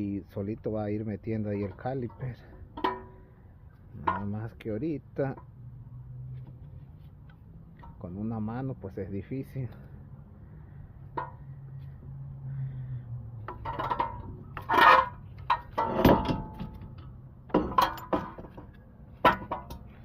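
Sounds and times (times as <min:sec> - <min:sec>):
metal tools clinking and knocking: 0:01.5 - 0:04.5, 0:13.4 - 0:20.0.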